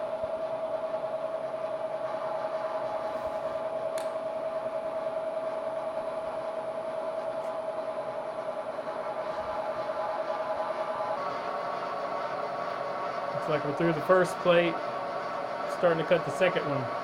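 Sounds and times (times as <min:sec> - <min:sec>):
click: 0:04.0 - 0:04.2
milling machine boring steel: 0:08.5 - 0:17.0.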